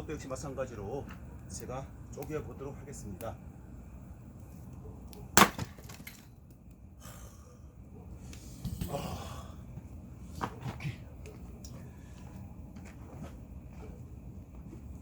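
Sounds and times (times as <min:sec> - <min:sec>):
axe splitting log: 0:05.3 - 0:06.2.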